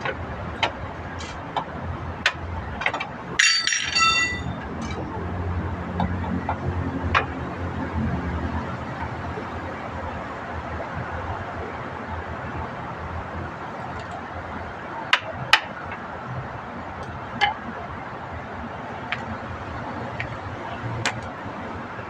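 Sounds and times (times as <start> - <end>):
hand tools clinking on metal: 3.4 - 5.0.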